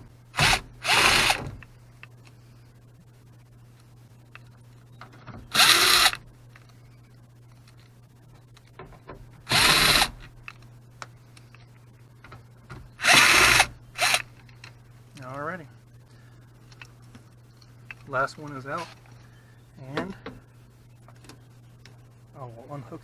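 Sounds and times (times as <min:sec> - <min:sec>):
power drill spinning out screws: 0:00.4 - 0:01.4, 0:05.5 - 0:06.2, 0:09.5 - 0:10.1, 0:13.0 - 0:14.3.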